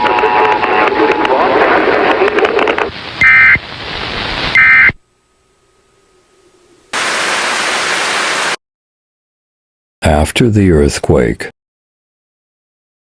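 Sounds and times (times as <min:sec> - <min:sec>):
faint hum: 0:00.0 - 0:07.2
white-noise static: 0:00.0 - 0:08.6
buzzy digital data bursts: 0:03.2 - 0:05.0.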